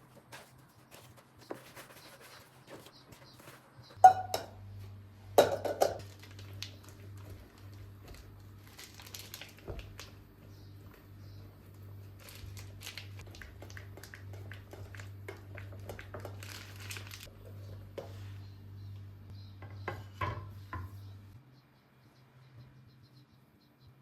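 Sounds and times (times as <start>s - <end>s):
rustling: 0.0s - 4.0s
steady low hum: 0.0s - 23.8s
dishes and utensils clinking: 4.0s - 4.6s, 5.4s - 6.1s.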